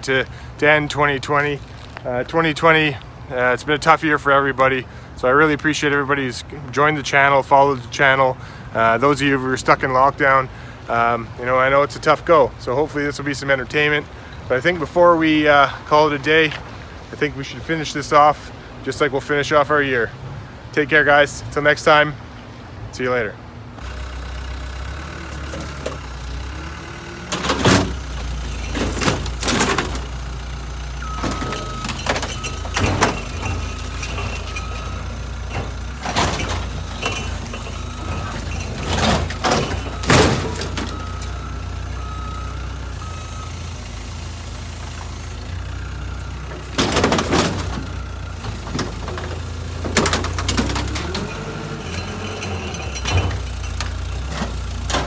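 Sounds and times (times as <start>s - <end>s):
skid steer engine running: 23.7s - 55.0s
back-up alarm beeping: 23.8s - 54.1s
crashing and crunching metal: 23.8s - 55.0s.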